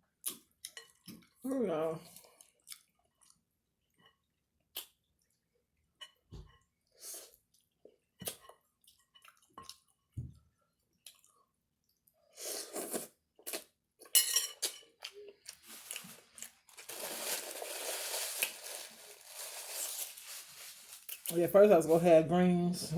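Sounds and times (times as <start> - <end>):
wet mouth clicks and smacks: 4.7 - 5.0.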